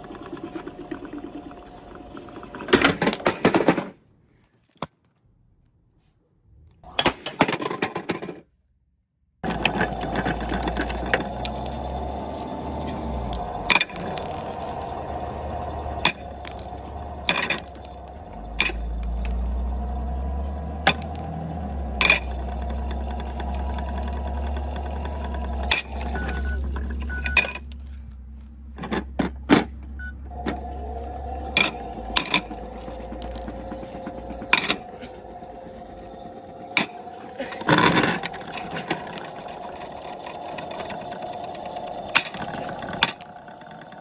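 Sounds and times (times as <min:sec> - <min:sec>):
small electric motor whirring: 0:09.4 - 0:28.0, 0:30.3 - 0:44.0.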